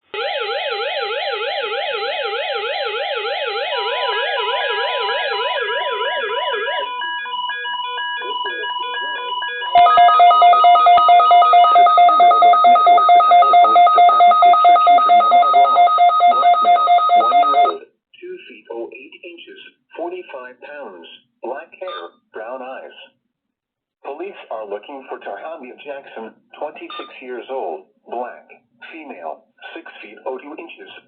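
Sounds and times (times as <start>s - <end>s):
rapidly pulsing alarm tones: 0.2s - 17.8s
warbling siren tone: 0.2s - 17.8s
electronic beeping: 6.4s - 17.8s.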